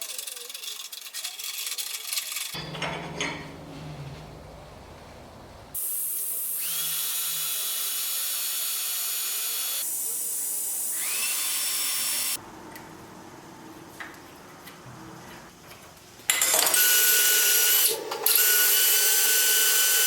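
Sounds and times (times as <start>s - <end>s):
power drill whining: 10.9s - 12.4s.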